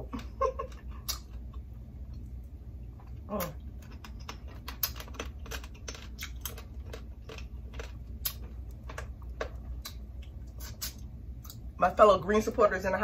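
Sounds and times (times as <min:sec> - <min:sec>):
shells clicking while eating: 0:03.8 - 0:10.0.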